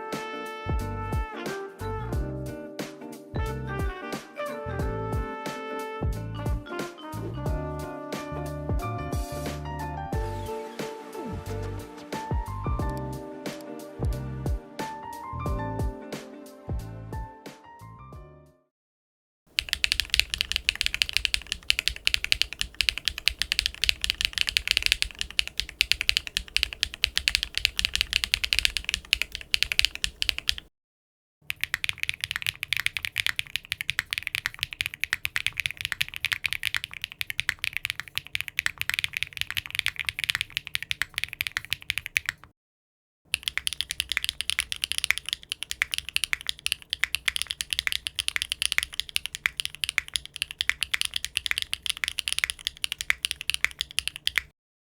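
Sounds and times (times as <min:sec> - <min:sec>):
fast typing on mechanical keyboard: 0:19.5 - 0:30.7, 0:31.5 - 0:42.5, 0:43.3 - 0:54.5.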